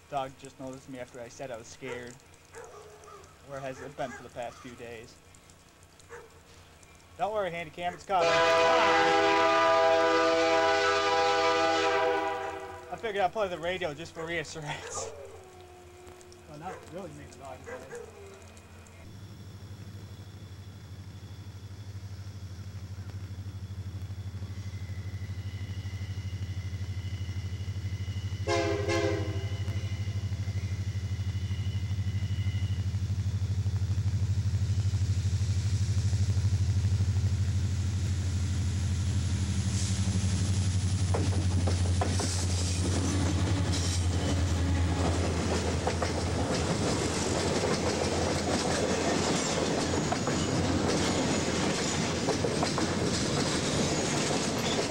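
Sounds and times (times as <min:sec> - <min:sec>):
train wheels clicking over rail joints: 0:00.0 - 0:08.2, 0:37.2 - 0:54.9
diesel locomotive engine drone: 0:00.0 - 0:54.9.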